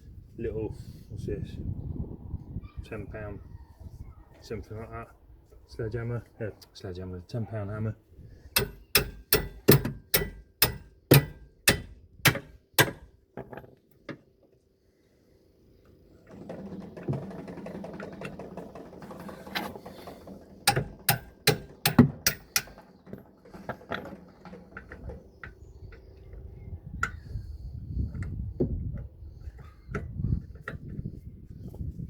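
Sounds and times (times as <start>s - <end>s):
hammer striking breaker bar: 8.6s - 13.1s, 20.7s - 22.8s.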